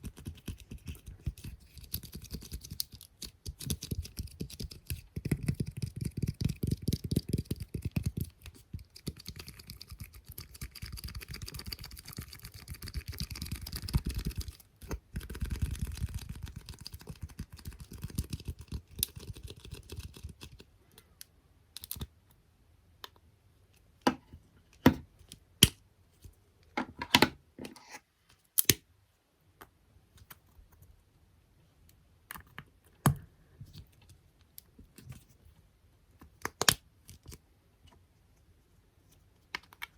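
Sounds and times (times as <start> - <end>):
tapping and scratching on objects: 0.0 - 20.6.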